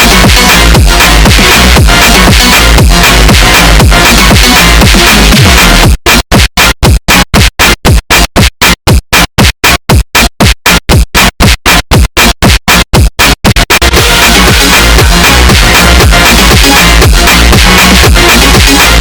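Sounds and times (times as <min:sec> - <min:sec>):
stuttering bass slides: 0:00.0 - 0:06.2, 0:11.7 - 0:19.0
phonk beat with heavy bass: 0:00.0 - 0:19.0.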